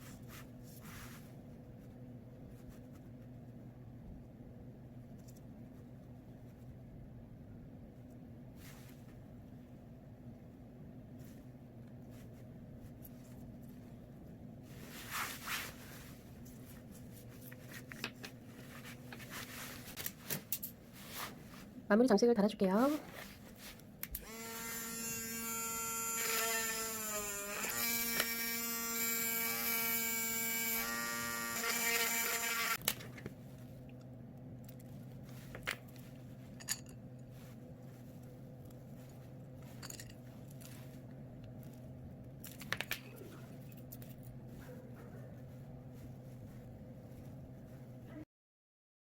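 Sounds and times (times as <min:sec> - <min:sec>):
low steady hum: 0:00.0 - 0:48.3
electric hand drill whining: 0:24.2 - 0:32.8.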